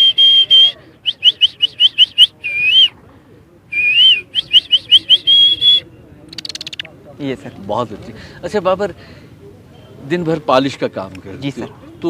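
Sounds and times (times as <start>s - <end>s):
man whistling birdsong: 0.0s - 2.9s, 3.7s - 5.8s.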